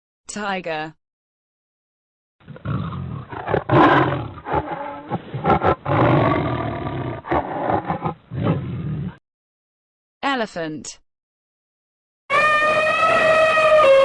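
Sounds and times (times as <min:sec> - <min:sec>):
tiger roaring: 0:02.4 - 0:09.2.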